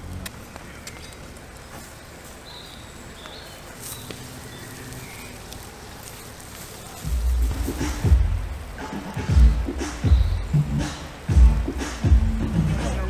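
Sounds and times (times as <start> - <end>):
faint clicks: 0.0 - 8.0.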